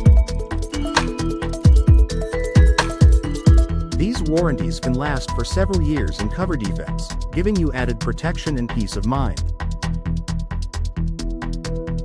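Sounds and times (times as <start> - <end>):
electronic music with steady beat: 0.0 - 12.0.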